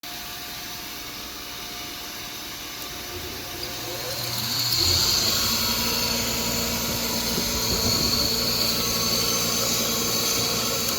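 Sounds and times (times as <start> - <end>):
bench grinder motor humming: 2.7 - 10.9.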